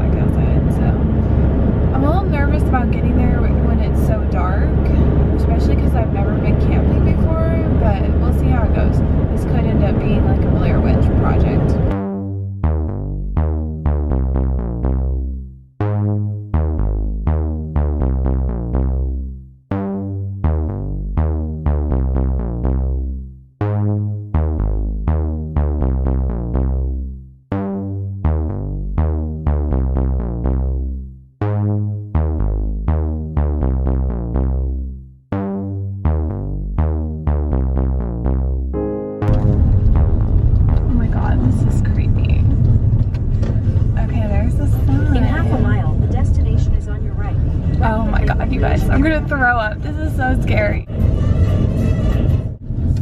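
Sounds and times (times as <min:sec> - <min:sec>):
electronic music with heavy bass: 0:09.8 - 0:43.0.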